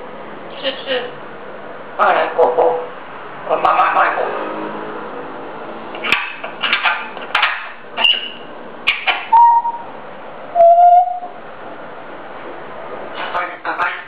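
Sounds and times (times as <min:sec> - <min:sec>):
parrot harsh calls: 0:06.1 - 0:09.9
parrot whistled notes: 0:09.3 - 0:09.9, 0:10.6 - 0:11.4.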